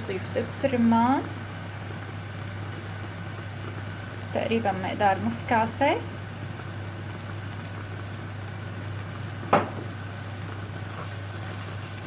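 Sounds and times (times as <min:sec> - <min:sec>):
stuffing hissing in a pan: 0:08.8 - 0:12.0.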